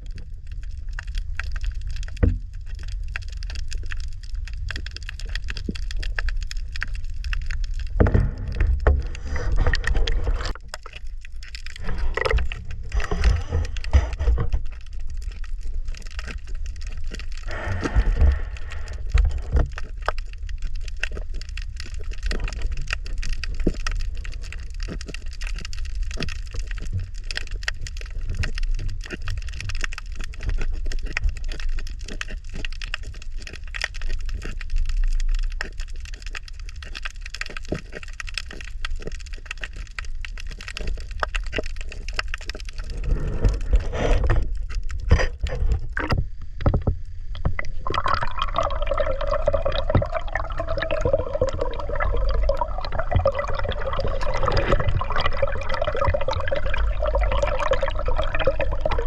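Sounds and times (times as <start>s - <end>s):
water sloshing and gurgling: 0.0s - 59.0s
sharp crackling clicks: 0.1s - 57.6s
low rumble: 7.5s - 15.8s, 16.4s - 20.0s, 42.9s - 59.0s.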